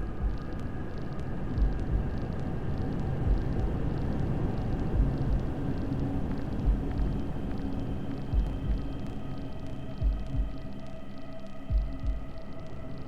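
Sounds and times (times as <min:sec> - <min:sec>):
heartbeat thumps: 0:00.0 - 0:00.6, 0:01.6 - 0:02.2, 0:03.2 - 0:03.7, 0:04.9 - 0:05.4, 0:06.6 - 0:07.2, 0:08.3 - 0:09.0, 0:10.0 - 0:10.6, 0:11.7 - 0:12.3
rumbling white noise: 0:00.0 - 0:10.9.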